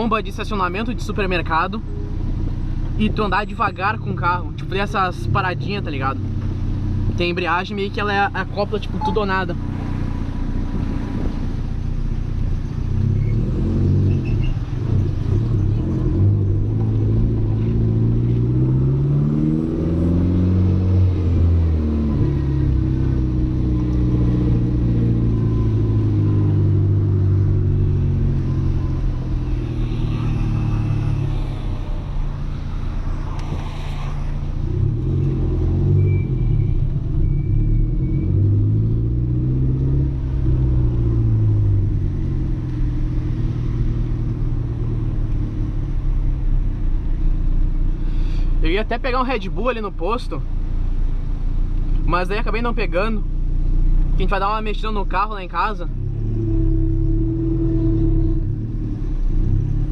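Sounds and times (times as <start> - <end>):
car engine accelerating: 0.9 - 59.9.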